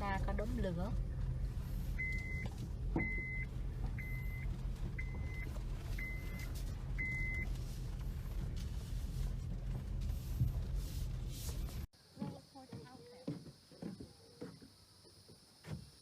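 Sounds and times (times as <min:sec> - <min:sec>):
steady low rumble: 0:00.0 - 0:11.9
short electronic beeps: 0:02.0 - 0:07.5.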